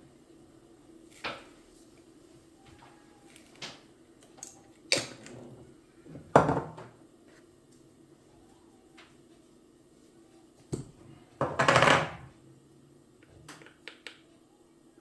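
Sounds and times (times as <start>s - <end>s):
objects knocking and clattering: 6.1s - 7.0s, 10.8s - 12.3s.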